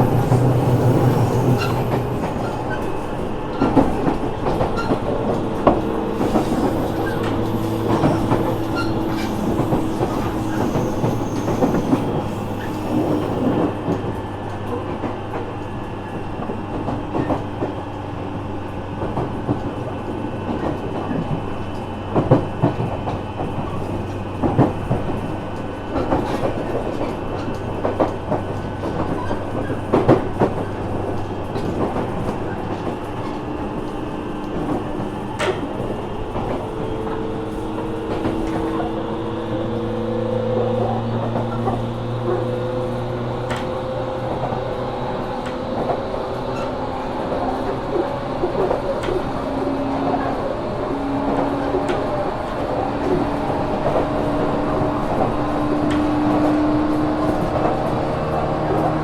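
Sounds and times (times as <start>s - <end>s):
train motor hum: 0.0s - 15.8s.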